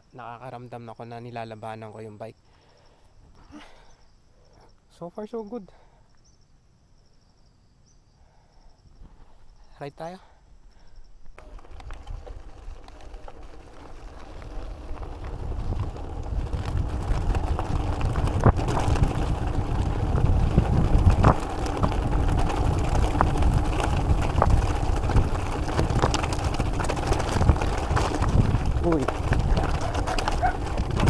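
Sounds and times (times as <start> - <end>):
bike tyres rolling on gravel: 11.3 - 31.0
bike clicks and knocks: 11.4 - 31.0
wind rushing over microphone: 11.4 - 31.0.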